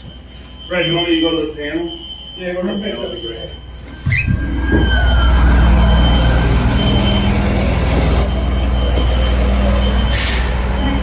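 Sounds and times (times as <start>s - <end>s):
diesel engine rumbling: 4.0s - 11.0s.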